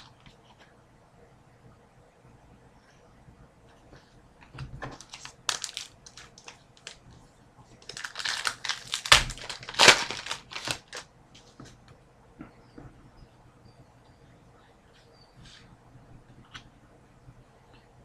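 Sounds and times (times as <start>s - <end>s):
wrapper crinkling and crackling: 5.0s - 7.0s, 7.8s - 11.1s.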